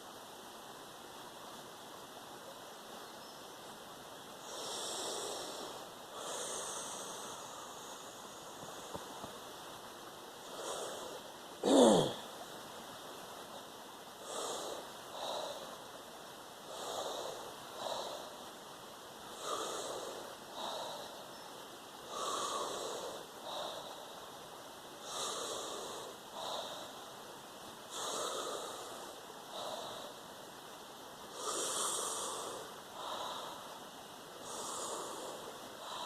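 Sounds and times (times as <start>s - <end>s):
person breathing deeply: 4.4s - 9.3s, 10.4s - 12.4s, 14.2s - 16.0s, 16.6s - 18.5s, 19.3s - 21.2s, 22.0s - 24.4s, 25.0s - 27.1s, 27.9s - 30.2s, 31.3s - 33.8s, 34.4s - 36.0s.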